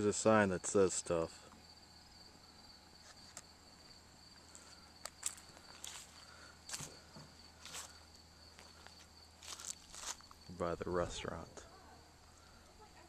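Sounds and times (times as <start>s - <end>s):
crickets trilling: 0.0s - 13.0s
footsteps crunching: 4.4s - 10.5s.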